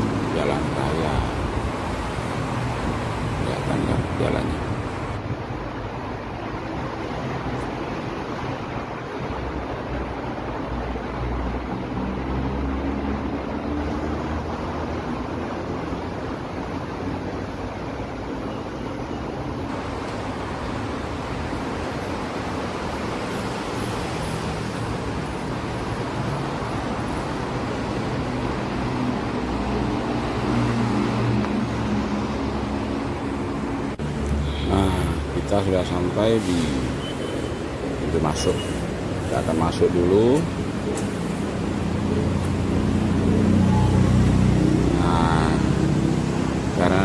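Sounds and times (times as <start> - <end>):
road traffic noise: 0.0 - 47.0.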